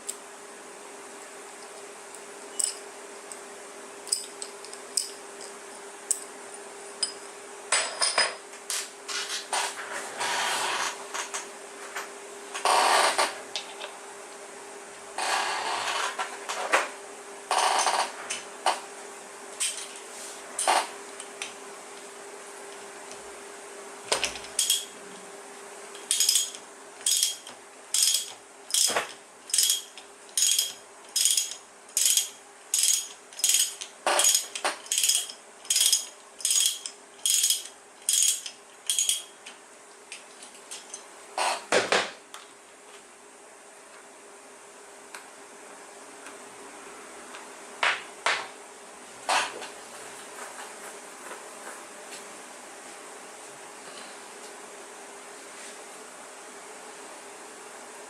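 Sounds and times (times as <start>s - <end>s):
faint steady hum: 0.0s - 58.0s
metal tool clinks and scrapes: 2.5s - 2.8s, 24.3s - 25.0s, 26.0s - 39.3s.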